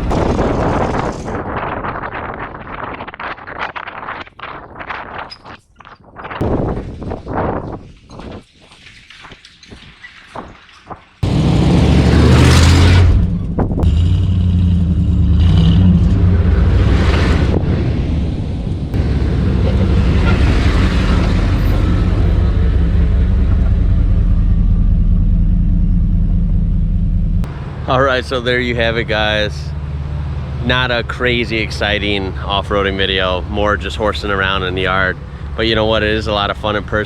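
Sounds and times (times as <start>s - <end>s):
truck engine revving: 0.0s - 1.9s, 11.2s - 36.9s.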